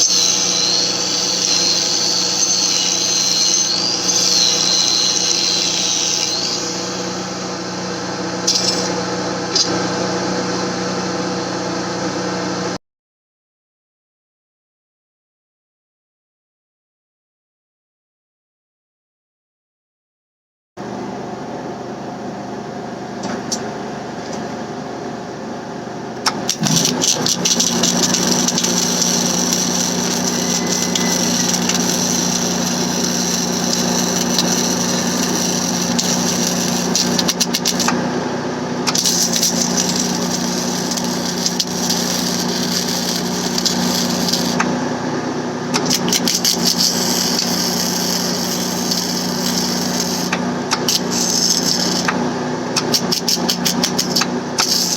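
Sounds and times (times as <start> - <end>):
small engine running: 0.0 - 11.0, 26.2 - 54.9.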